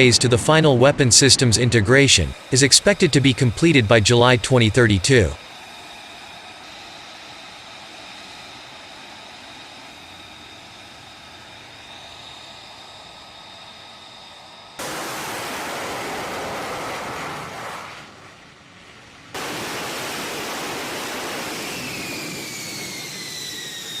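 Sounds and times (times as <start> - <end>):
jet engine rushing with turbine whine: 0.0 - 24.0.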